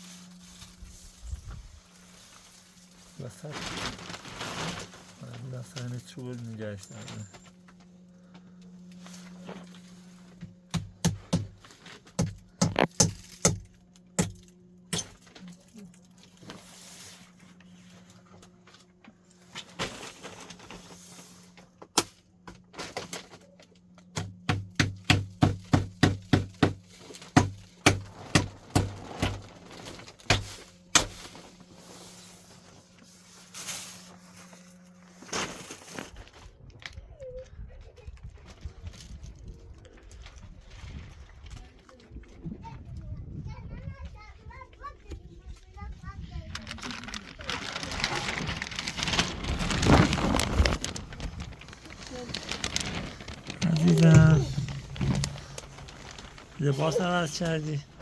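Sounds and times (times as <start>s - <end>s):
steady low hum: 0.0s - 36.4s, 48.0s - 58.0s
hammer striking nails into wood: 10.7s - 11.5s, 12.2s - 13.6s, 24.2s - 26.8s.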